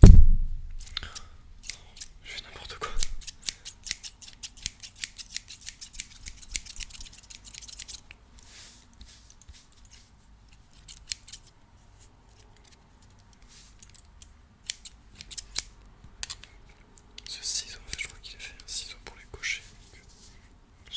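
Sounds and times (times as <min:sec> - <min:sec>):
scissors snipping: 0:00.0 - 0:02.2, 0:02.8 - 0:08.1, 0:10.7 - 0:11.5, 0:13.8 - 0:16.5.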